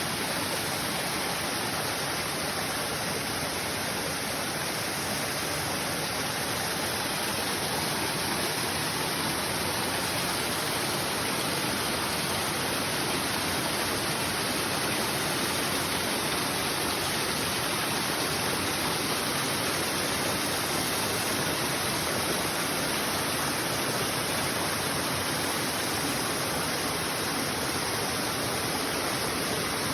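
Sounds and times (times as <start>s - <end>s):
waterfall rushing: 0.0s - 29.9s.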